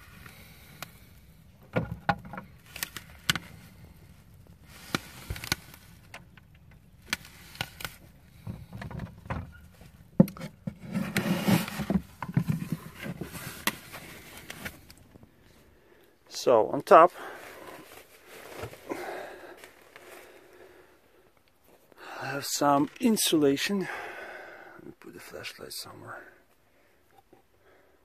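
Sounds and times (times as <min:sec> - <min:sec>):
rustling and scraping: 0:01.6 - 0:15.5, 0:17.2 - 0:20.7.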